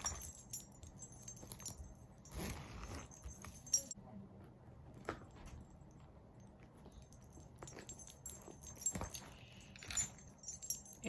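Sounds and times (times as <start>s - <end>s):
metal pieces jingling: 0.0s - 2.4s, 3.0s - 4.0s, 6.8s - 11.0s
handbag rustling: 0.0s - 4.0s.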